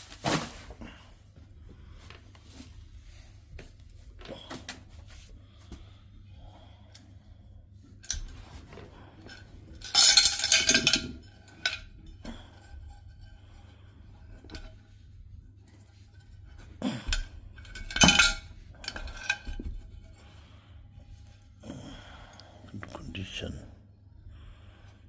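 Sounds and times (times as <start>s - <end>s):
metal parts clinking: 9.3s - 12.1s, 17.1s - 19.6s.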